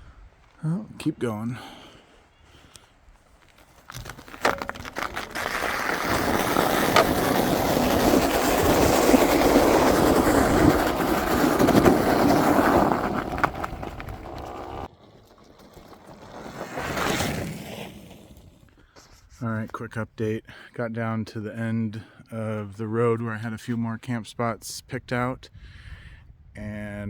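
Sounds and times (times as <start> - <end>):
e-bike rattling over rough road: 3.6 - 18.8.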